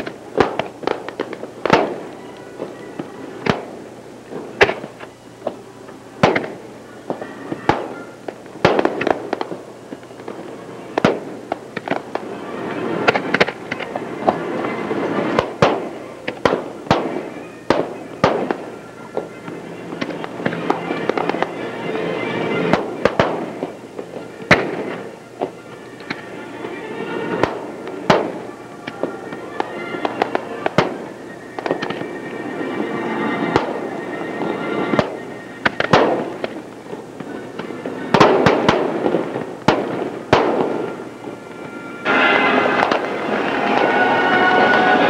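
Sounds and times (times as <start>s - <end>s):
fireworks bangs: 0.0s - 45.0s
background music: 40.3s - 45.0s.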